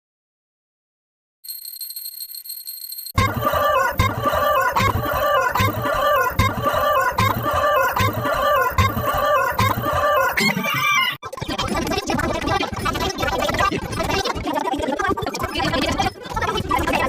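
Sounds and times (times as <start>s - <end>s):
chicken clucking and crowing: 3.2s - 11.1s.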